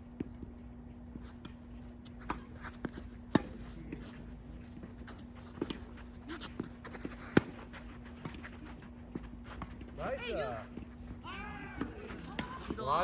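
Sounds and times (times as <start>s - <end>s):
footsteps: 1.2s - 13.0s
racket hitting tennis ball: 1.4s - 12.9s
ball bouncing: 2.0s - 4.1s, 4.8s - 13.0s.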